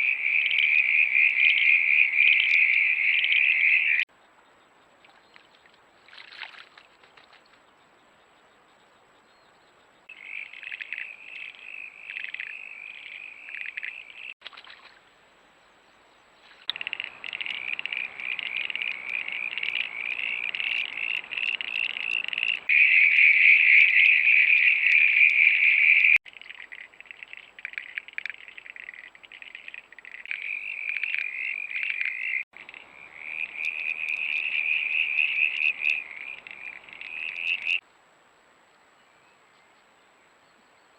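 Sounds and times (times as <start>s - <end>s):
frogs trilling chorus: 0.0s - 4.1s, 10.1s - 14.4s, 16.6s - 37.8s.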